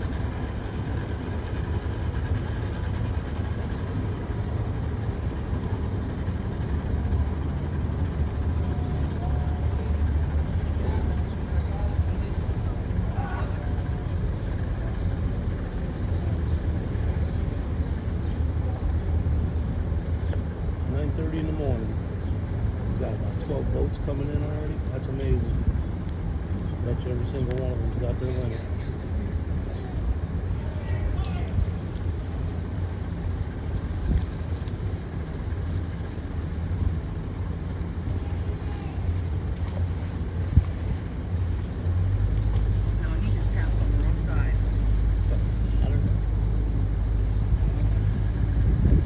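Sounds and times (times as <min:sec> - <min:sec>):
boat motor droning: 0:00.0 - 0:49.0
wind on microphone: 0:45.8 - 0:49.0.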